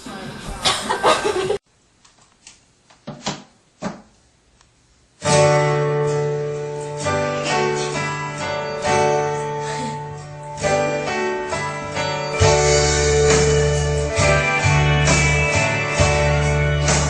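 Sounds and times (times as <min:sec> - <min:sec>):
strummed acoustic guitar: 0:05.2 - 0:17.0.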